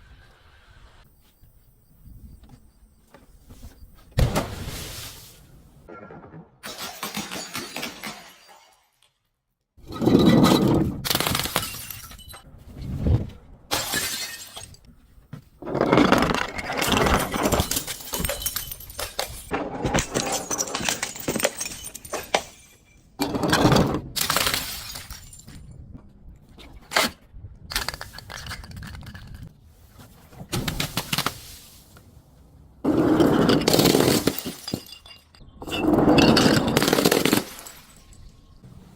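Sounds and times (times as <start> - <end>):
glass bottles smashing: 6.6 - 9.0, 9.9 - 12.4, 13.7 - 14.8, 16.5 - 23.4, 24.2 - 25.7, 32.9 - 38.6
glass shards crunching and clinking: 11.1 - 12.4, 16.7 - 23.2, 33.1 - 38.6.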